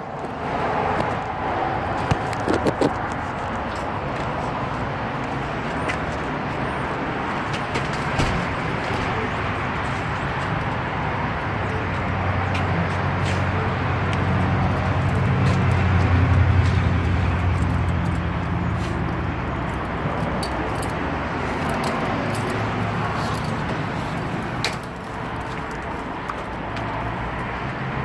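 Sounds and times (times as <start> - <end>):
steady traffic noise: 0.0 - 28.0
vehicle engine passing by: 12.1 - 24.6.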